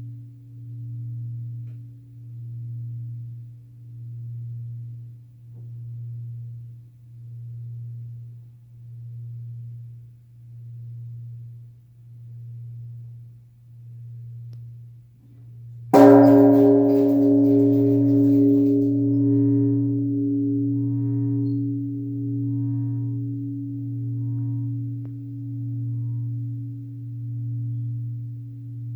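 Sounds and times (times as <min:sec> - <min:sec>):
large temple bell ringing: 0:16.0 - 0:28.9.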